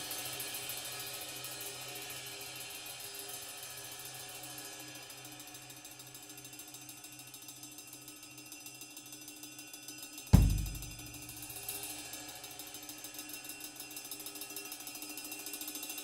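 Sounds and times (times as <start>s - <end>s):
bass drum and cymbal hit: 10.4s - 11.5s
light cymbal accent: 10.4s - 11.6s.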